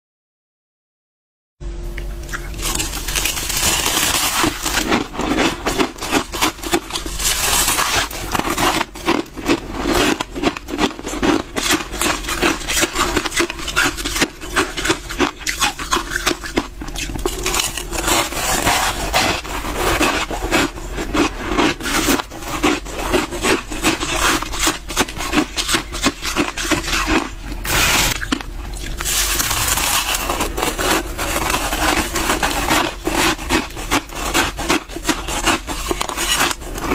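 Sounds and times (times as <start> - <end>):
frost crunching: 2.3 - 36.9.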